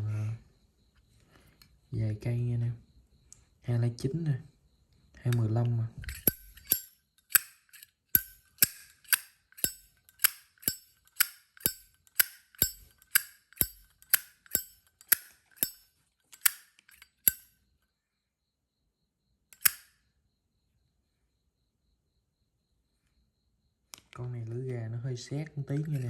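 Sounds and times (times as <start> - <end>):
lighter lid clicking open and shut: 6.1 - 15.8, 16.4 - 17.4, 19.6 - 19.9.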